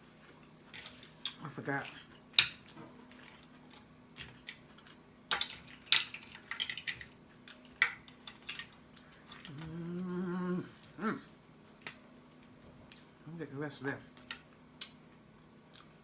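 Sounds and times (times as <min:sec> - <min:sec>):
person humming mmm: 0:09.4 - 0:11.3.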